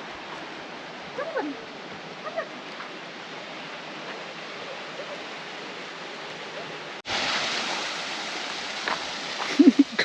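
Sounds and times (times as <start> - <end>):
river rushing: 0.0 - 10.0.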